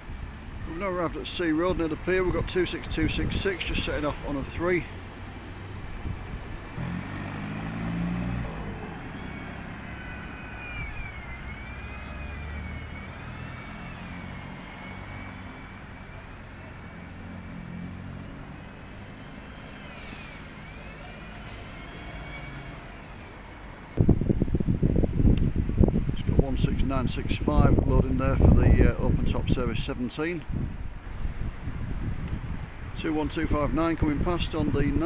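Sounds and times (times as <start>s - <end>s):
bus engine rumbling: 0.0s - 35.0s
wavering whine: 7.7s - 23.3s.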